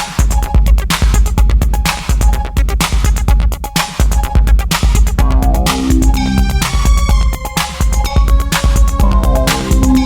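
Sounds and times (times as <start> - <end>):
drum machine beat: 0.0 - 10.0
deep booming bass: 5.1 - 7.4
synth line: 5.2 - 7.6.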